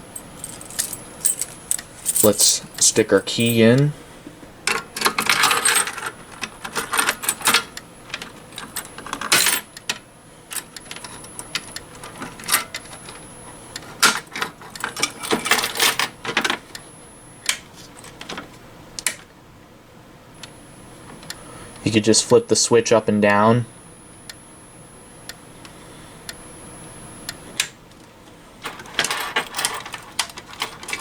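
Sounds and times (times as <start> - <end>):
key rattling in a lock: 0.3 - 3.8, 28.7 - 31.0.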